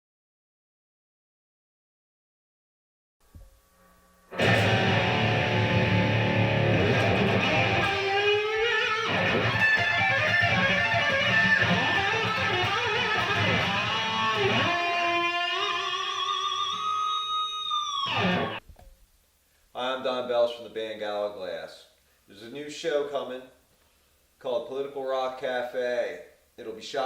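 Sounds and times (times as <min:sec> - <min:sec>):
electric guitar rock playing: 0:04.3 - 0:18.6.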